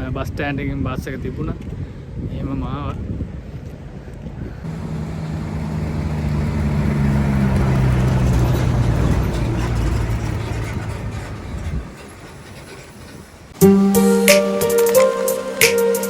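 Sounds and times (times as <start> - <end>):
road rush: 0.0 - 16.0
bus engine humming: 4.6 - 16.0.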